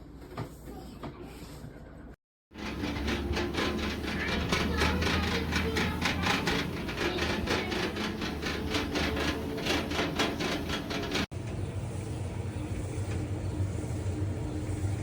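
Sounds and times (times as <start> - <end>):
clothes dryer clattering: 2.5 - 11.5
low machine hum: 2.6 - 15.0.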